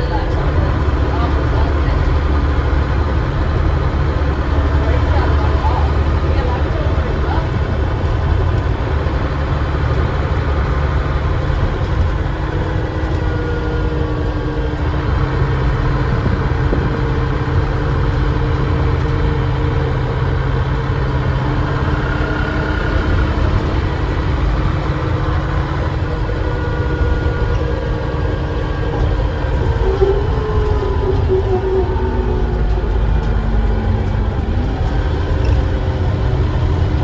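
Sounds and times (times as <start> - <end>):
bus engine drone: 0.0 - 37.0
turbocharger whine: 0.0 - 37.0.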